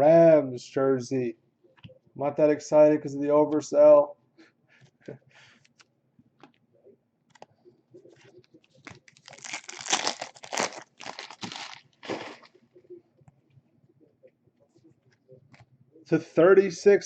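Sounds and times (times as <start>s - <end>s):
plastic wrapper crinkling and tearing: 8.7s - 12.6s.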